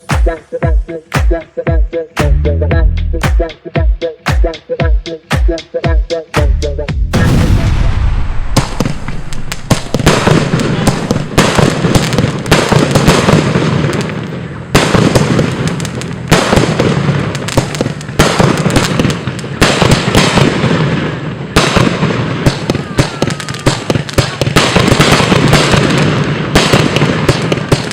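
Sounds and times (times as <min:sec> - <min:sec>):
loud firework bangs: 0:07.1 - 0:27.9
firework cake firing: 0:07.2 - 0:27.9.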